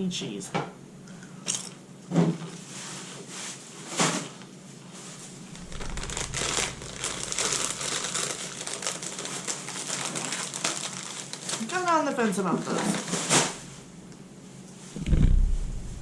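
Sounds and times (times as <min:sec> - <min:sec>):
plastic chip bag crinkling: 0:05.5 - 0:13.7.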